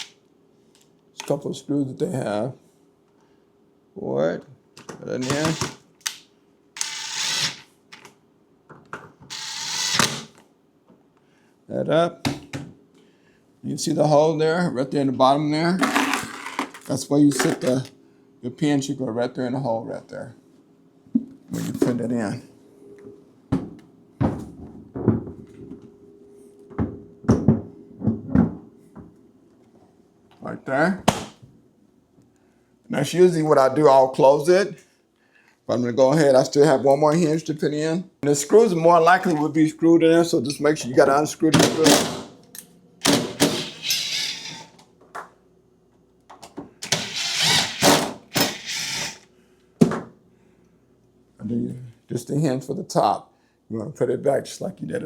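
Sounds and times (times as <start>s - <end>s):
cordless drill driving screws: 5.2s - 5.8s, 6.8s - 7.6s, 9.3s - 10.4s, 43.0s - 44.7s, 46.8s - 49.2s.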